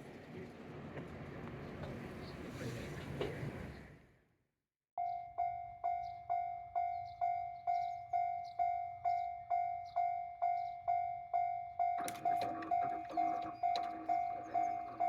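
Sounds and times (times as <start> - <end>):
railroad crossing bell ringing: 5.0 - 15.0.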